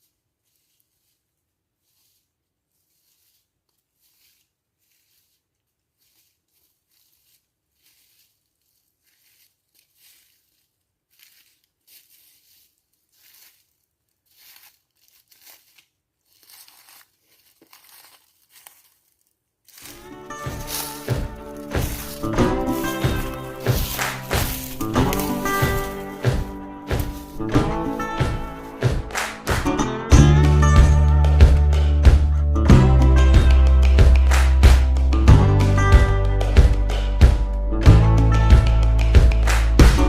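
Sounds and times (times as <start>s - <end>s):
footsteps crunching dry leaves: 0.0s - 30.9s
loud music: 20.0s - 40.0s.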